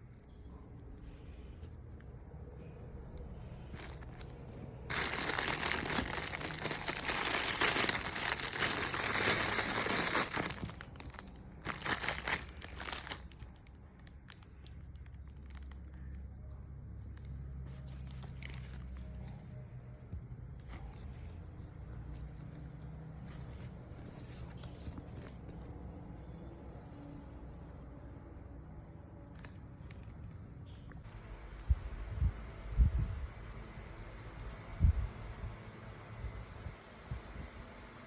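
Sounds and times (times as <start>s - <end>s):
low steady hum: 0.0s - 38.0s
packaging wrapper crinkling: 3.7s - 16.2s, 17.7s - 19.3s.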